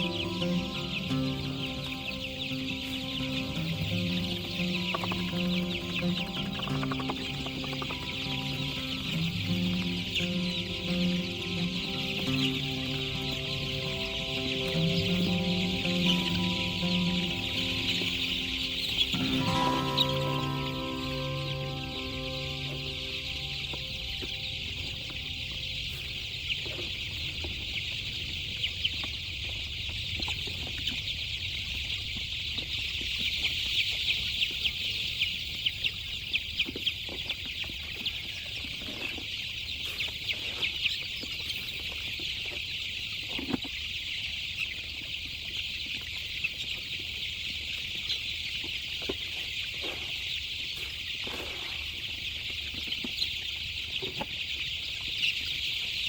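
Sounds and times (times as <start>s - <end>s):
chickens clucking: 0.0s - 56.0s.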